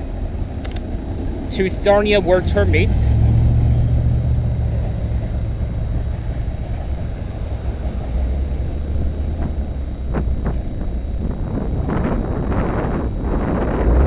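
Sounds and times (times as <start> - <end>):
freight train rumbling past: 1.2 - 9.9.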